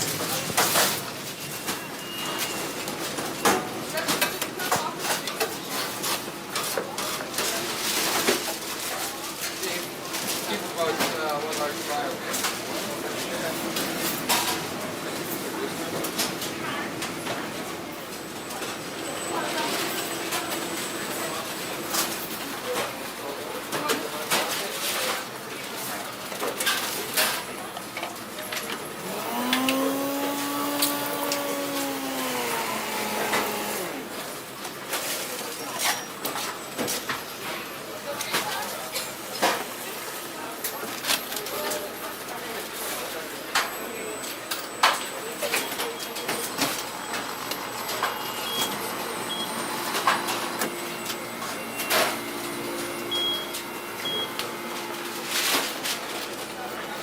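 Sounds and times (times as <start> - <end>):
kitchen clatter: 0.0 - 17.8
kitchen appliance motor humming: 29.0 - 34.0.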